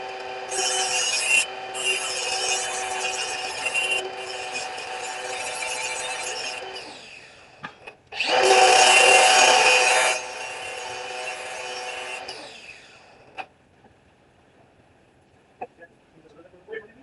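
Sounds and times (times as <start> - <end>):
electric grinder motor whine: 0.0 - 7.4, 8.2 - 12.9
harsh grinding of steel: 0.0 - 7.6, 8.2 - 13.0.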